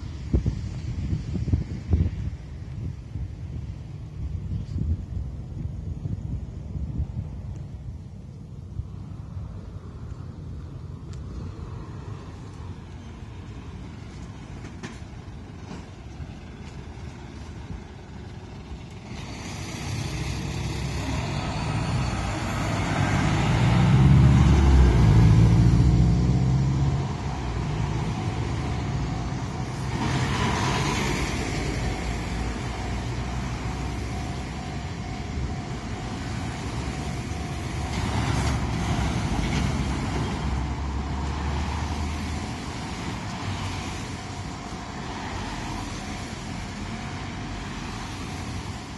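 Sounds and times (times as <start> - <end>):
steady traffic noise: 0.0 - 48.9
heavy vehicle passing: 11.6 - 48.9.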